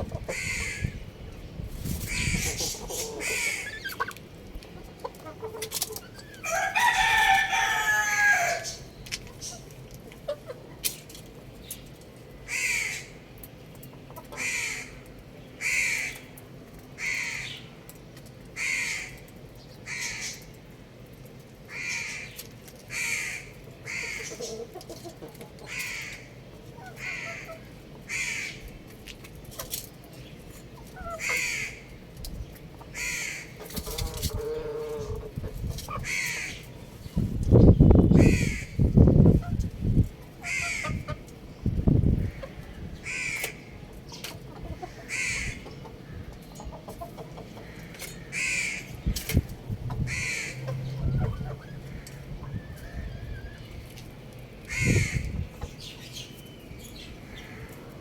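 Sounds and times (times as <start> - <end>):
bird harsh calls: 0.2 - 1.2, 2.0 - 4.2, 12.5 - 13.2, 31.0 - 31.9, 32.9 - 35.2, 37.7 - 39.0, 42.0 - 44.2, 44.8 - 46.3, 47.6 - 49.2, 50.0 - 53.7, 54.7 - 57.7.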